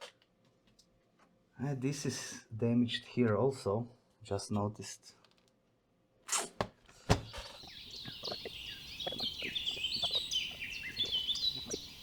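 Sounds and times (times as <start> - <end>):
sharp knocks: 6.6 - 7.6
small birds chirping: 7.0 - 12.0.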